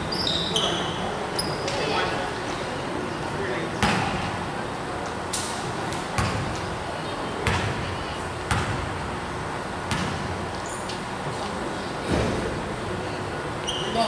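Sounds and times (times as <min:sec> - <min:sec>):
basketball bouncing on gym floor: 0:03.8 - 0:04.2, 0:06.2 - 0:06.6, 0:07.4 - 0:09.1, 0:09.9 - 0:10.4.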